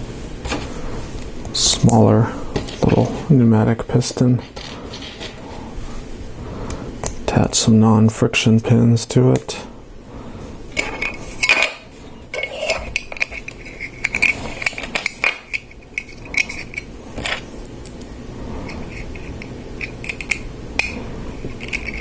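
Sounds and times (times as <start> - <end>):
plastic parts scraping: 4.4 - 5.4, 10.8 - 17.5.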